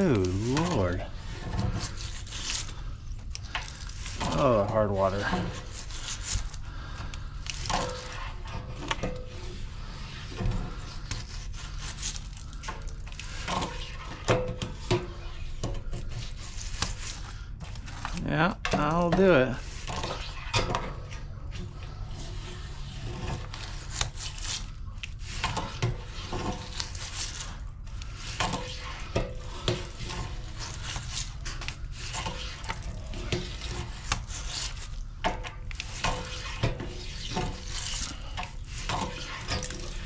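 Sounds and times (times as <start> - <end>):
scraping inside metal tank: 3.8 - 7.0, 19.3 - 40.0.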